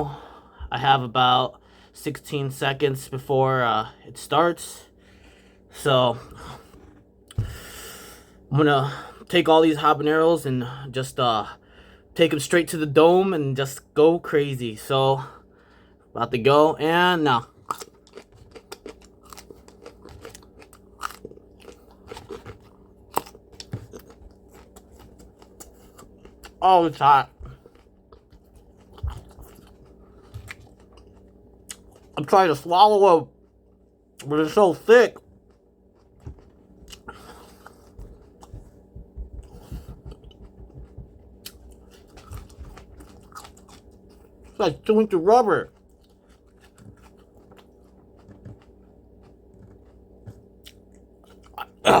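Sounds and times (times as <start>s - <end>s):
peppers crunched while chewing: 17.4s - 32.3s, 40.3s - 44.9s, 45.6s - 51.8s.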